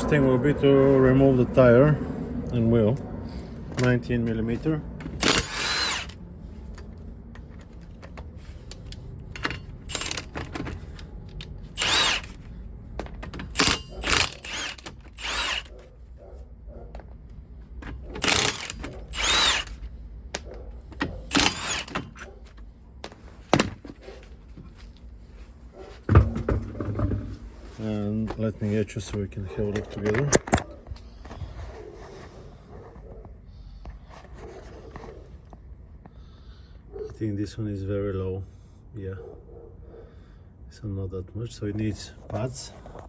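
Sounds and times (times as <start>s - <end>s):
power tool undoing wheel bolts: 5.0s - 15.8s, 17.8s - 19.8s, 21.0s - 22.3s.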